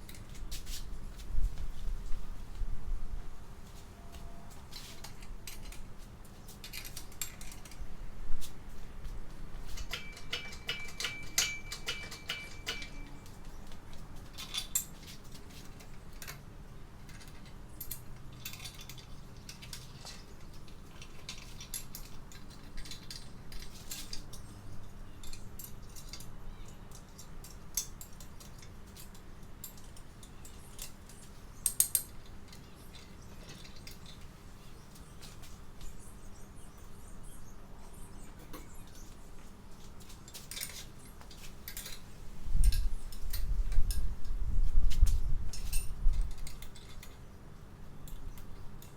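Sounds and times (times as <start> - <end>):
metallic clinks of hand tools: 9.8 - 13.4.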